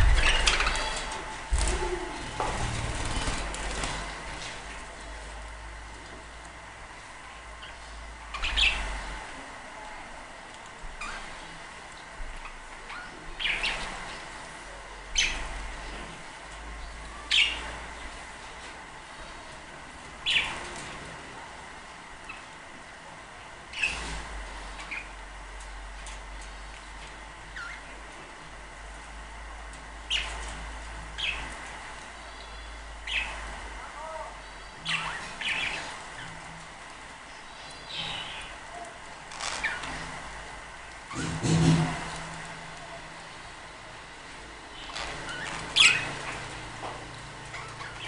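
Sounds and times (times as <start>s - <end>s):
budgerigars chirping: 0.0s - 1.1s, 7.6s - 9.0s, 12.4s - 14.0s, 17.3s - 17.7s, 30.1s - 30.4s, 32.2s - 33.5s, 34.5s - 36.4s, 44.8s - 46.5s, 47.5s - 48.0s
soft warbling chatter: 0.0s - 3.0s, 32.2s - 36.5s.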